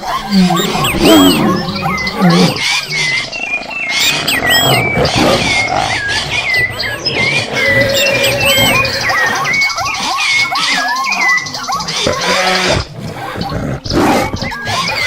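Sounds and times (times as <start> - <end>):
high whistled chirps: 0.0 - 11.7.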